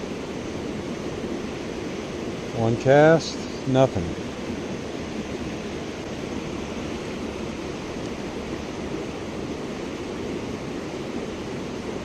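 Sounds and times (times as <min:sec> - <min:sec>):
mountain stream flowing: 0:00.0 - 0:12.0.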